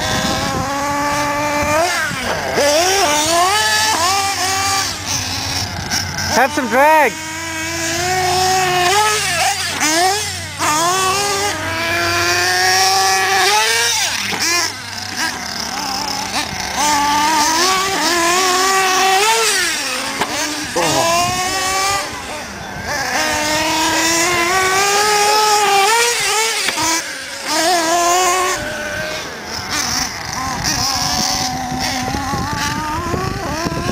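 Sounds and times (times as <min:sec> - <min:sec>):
small engines whining: 0:00.0 - 0:33.9.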